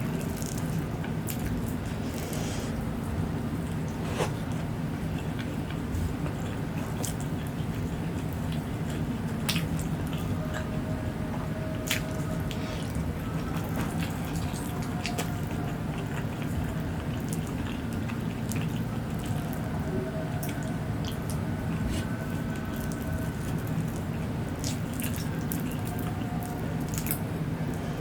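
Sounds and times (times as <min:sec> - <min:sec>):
wet chewing: 0:00.0 - 0:02.8, 0:11.8 - 0:19.8, 0:20.4 - 0:27.9
low background hum: 0:00.0 - 0:28.0.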